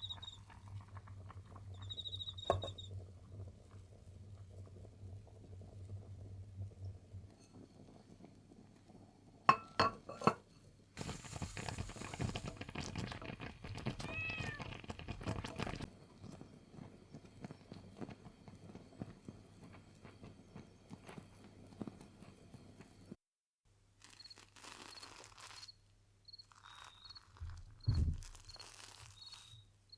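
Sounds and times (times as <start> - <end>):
cat meowing: 14.0 - 14.8
rustling: 24.0 - 25.8, 26.4 - 29.7.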